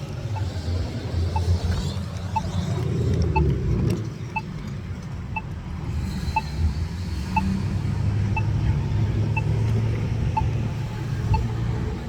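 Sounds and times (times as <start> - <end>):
faint electronic beeps: 8.3 - 8.6.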